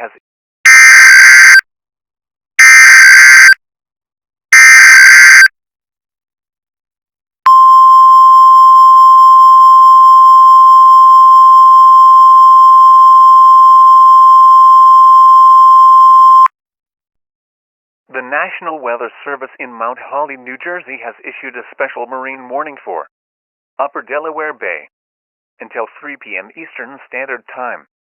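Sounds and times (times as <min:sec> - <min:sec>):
shrill attention tone: 0:00.7 - 0:01.6, 0:02.6 - 0:03.6, 0:04.5 - 0:05.5, 0:07.5 - 0:16.5.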